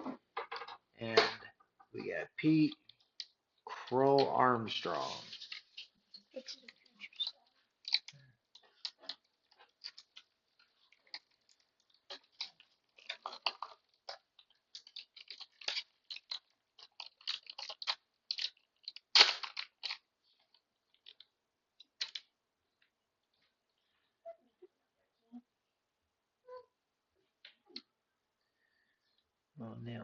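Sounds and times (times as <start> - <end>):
trading cards clicking and rustling: 2.4 - 22.3.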